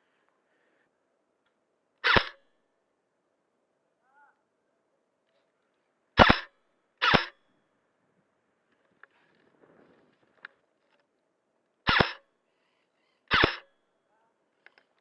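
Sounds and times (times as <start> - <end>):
airsoft gun shots: 2.0 - 2.4, 6.2 - 7.4, 11.9 - 12.2, 13.3 - 13.7.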